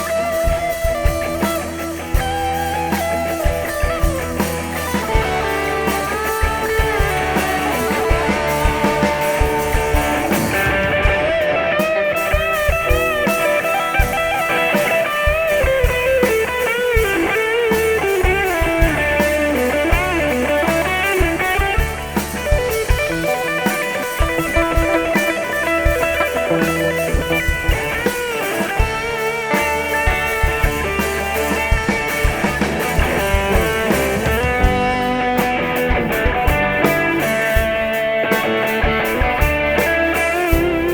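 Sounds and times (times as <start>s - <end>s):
bass guitar: 0.0s - 40.9s
drums: 0.0s - 40.9s
electric lead guitar bending notes: 0.0s - 40.9s.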